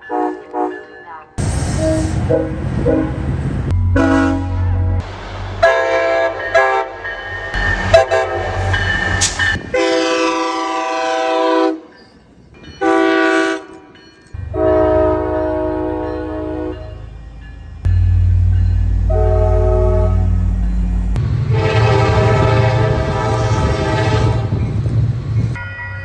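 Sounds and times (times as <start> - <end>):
train air horn blasts: 0.0 - 0.8, 1.4 - 3.2, 3.9 - 5.0, 5.6 - 7.0, 9.7 - 11.9, 12.8 - 13.9, 14.5 - 17.0, 19.0 - 20.6, 21.4 - 24.6
locomotive engine rumble: 0.4 - 11.4, 14.2 - 25.6.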